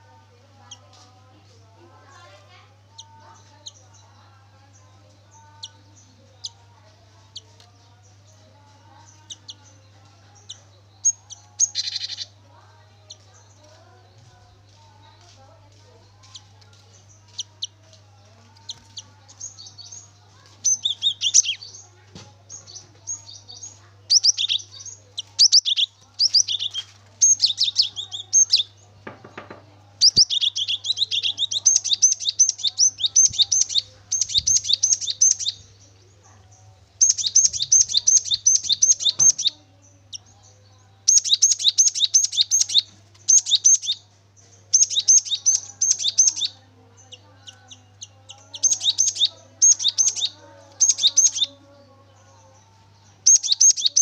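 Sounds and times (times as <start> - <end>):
bird singing high sharp notes: 10.4 - 12.4, 20.6 - 21.8, 22.5 - 28.8, 30.0 - 35.8, 37.0 - 39.5, 44.8 - 46.6.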